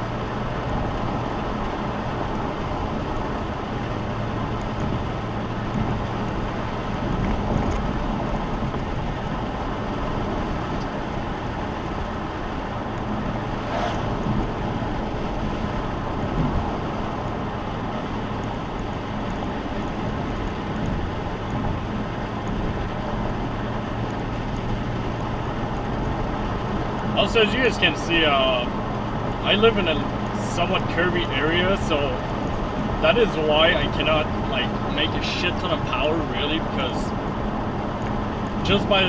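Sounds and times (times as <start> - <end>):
low engine drone: 0.0 - 39.0
road and tyre noise: 0.0 - 39.0
brief whoosh: 13.4 - 14.6.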